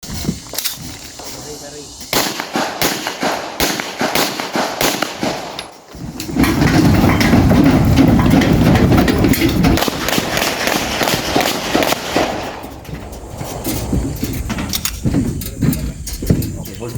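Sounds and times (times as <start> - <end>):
pistol shots: 2.1 - 5.9, 9.8 - 12.6
dense low rumble: 6.0 - 16.9.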